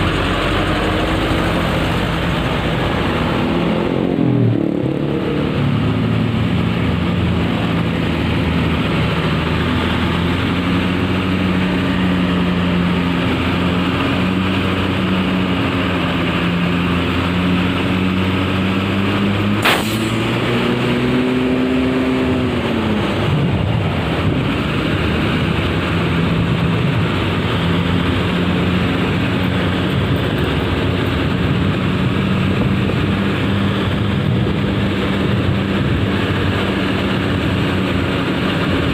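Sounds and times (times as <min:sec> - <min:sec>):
bus engine running: 0:00.0 - 0:38.9
road noise: 0:00.0 - 0:38.9
sharp click: 0:19.6 - 0:20.4.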